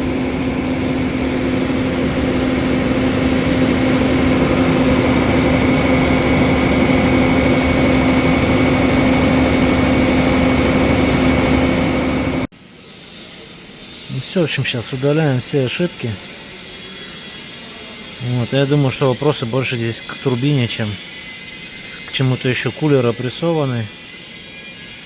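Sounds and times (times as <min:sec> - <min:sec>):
diesel truck engine revving: 0:00.0 - 0:12.5
engine cooling fan whirring: 0:00.0 - 0:12.5.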